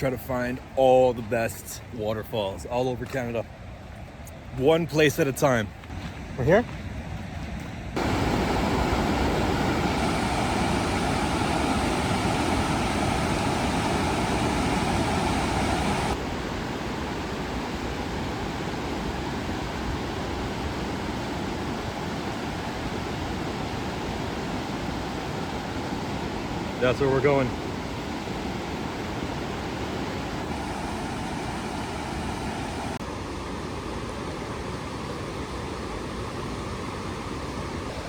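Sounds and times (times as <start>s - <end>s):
waterfall roaring: 8.0s - 38.0s.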